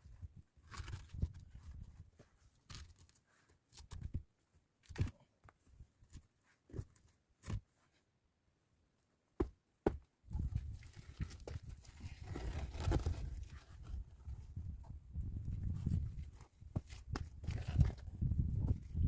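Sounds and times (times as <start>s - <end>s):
irregular knocks and thuds: 9.4s - 10.5s.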